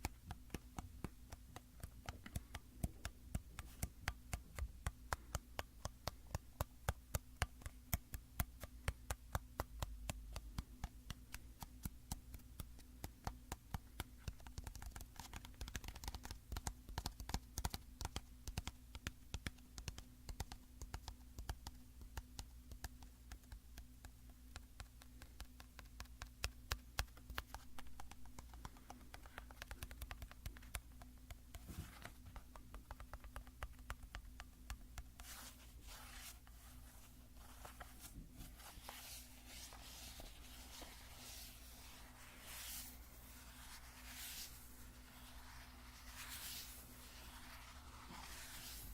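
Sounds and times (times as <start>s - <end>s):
rubbing on bottle surface: 35.2s - 48.9s.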